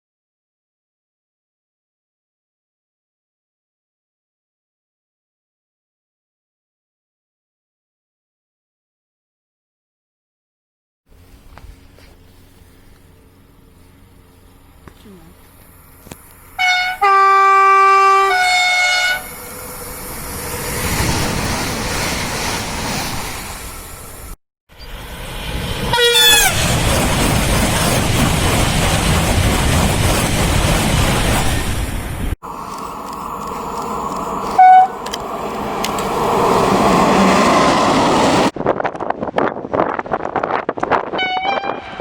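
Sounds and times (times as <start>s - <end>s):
passing train rushing: 11.1s - 42.0s
two-tone train horn: 16.6s - 19.5s, 25.9s - 26.6s, 34.5s - 35.2s, 41.2s - 42.0s
choppy gusting noise: 26.6s - 42.0s.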